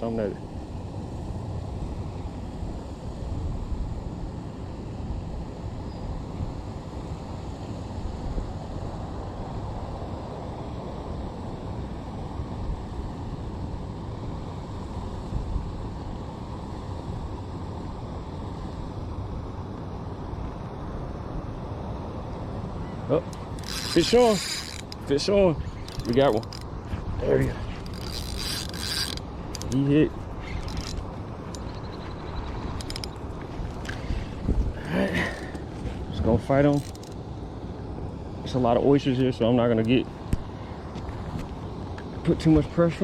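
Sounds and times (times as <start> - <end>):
wind buffeting microphone: 22.6 - 37.0.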